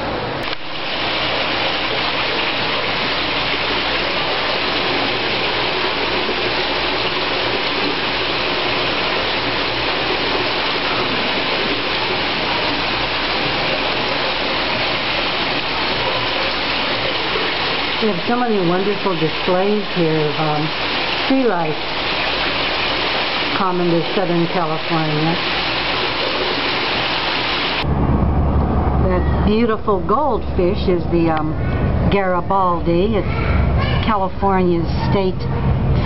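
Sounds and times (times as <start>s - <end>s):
running water rushing: 0.0s - 27.9s.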